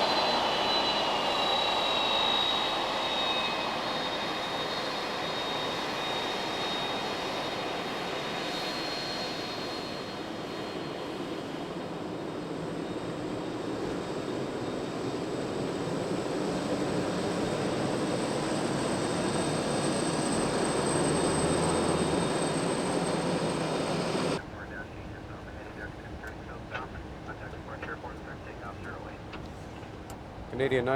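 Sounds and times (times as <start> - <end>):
jet engines rushing: 16.9 - 30.9
high engine whine: 18.9 - 30.9.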